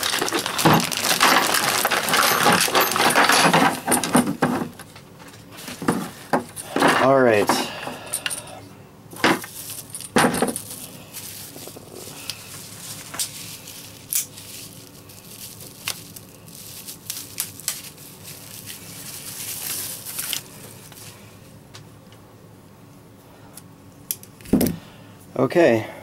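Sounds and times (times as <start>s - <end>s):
plastic bags crinkling: 0.0s - 4.8s, 9.2s - 21.2s
small parts clicking and knocking: 0.0s - 5.0s.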